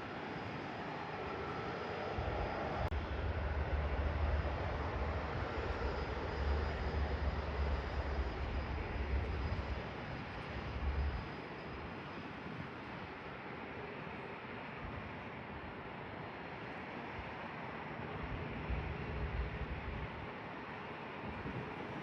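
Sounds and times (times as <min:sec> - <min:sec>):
jet engines at takeoff: 0:00.0 - 0:22.0.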